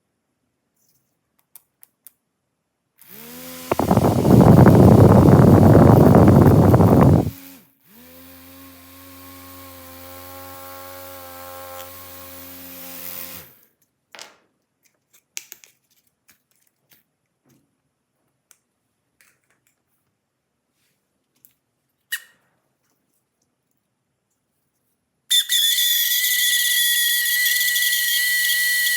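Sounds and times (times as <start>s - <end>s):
faint small clicks: 0.8s - 2.2s, 18.4s - 20.1s
toy motor buzzing whir: 3.0s - 13.6s, 25.3s - 28.9s.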